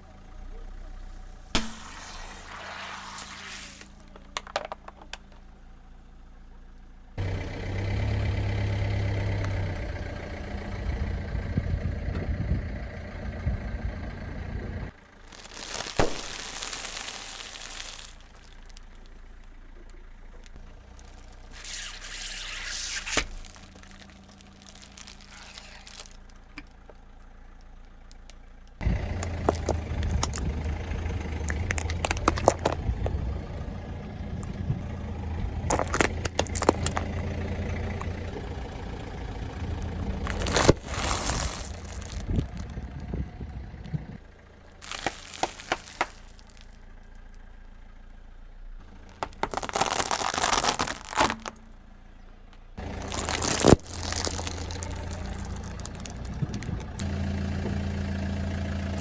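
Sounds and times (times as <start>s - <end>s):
car engine running: 0.0s - 2.6s, 3.9s - 15.4s, 18.2s - 59.0s
tyres crushing objects: 28.8s - 33.3s, 35.6s - 38.3s, 39.8s - 42.8s, 44.8s - 46.7s, 49.1s - 51.6s, 52.8s - 57.1s.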